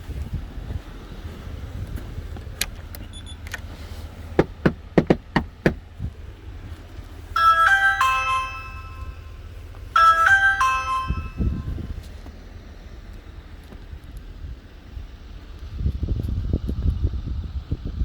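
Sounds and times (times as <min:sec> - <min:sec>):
knocking on door: 0:04.4 - 0:05.8
electronic doorbell chime: 0:07.4 - 0:11.9.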